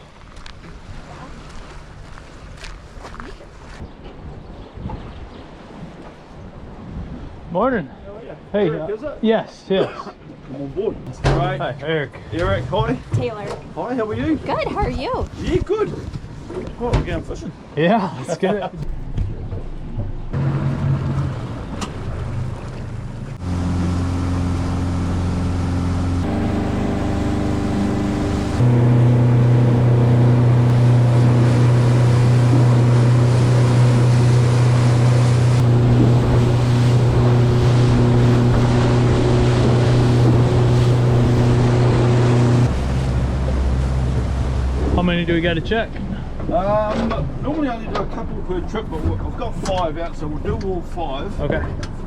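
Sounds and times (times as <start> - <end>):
water noise: 0.0 - 52.0
wind noise: 3.6 - 7.5, 28.2 - 45.4
boat engine running: 18.8 - 52.0.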